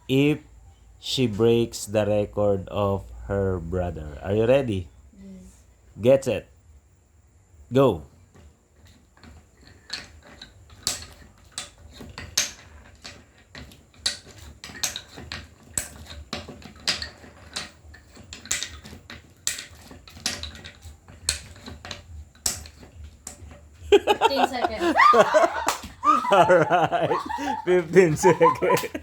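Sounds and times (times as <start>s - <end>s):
puzzle discs clacking on pegs: 8.8s - 29.0s.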